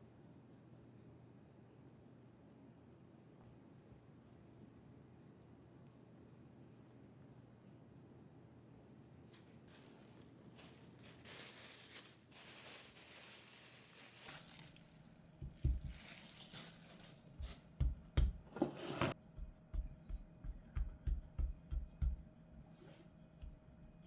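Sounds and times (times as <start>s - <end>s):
wrap or paper crinkling: 9.7s - 17.8s.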